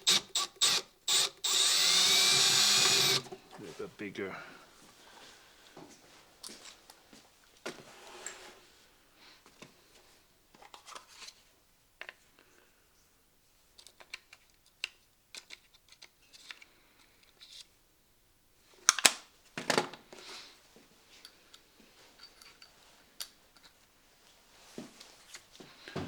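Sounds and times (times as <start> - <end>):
tools clicking and tapping: 0.0 - 3.4.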